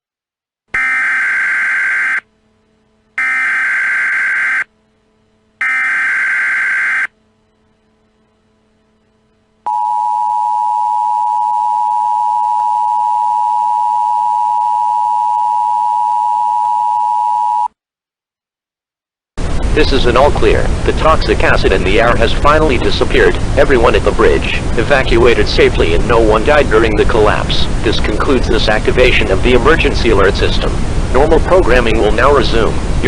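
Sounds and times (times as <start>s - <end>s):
shrill warbling data tones: 0.8s - 2.2s, 3.2s - 4.7s, 5.6s - 7.1s
long steady alert tone: 0.8s - 7.3s, 8.9s - 17.7s.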